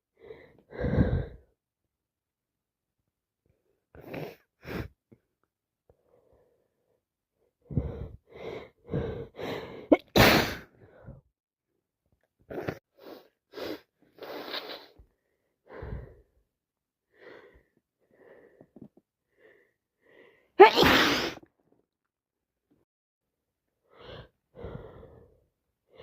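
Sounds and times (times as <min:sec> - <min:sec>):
woman breathing: 0:00.1 - 0:01.5, 0:07.6 - 0:09.9, 0:13.0 - 0:16.4, 0:17.1 - 0:20.6, 0:23.8 - 0:26.0
woman sneezing: 0:20.6 - 0:21.4.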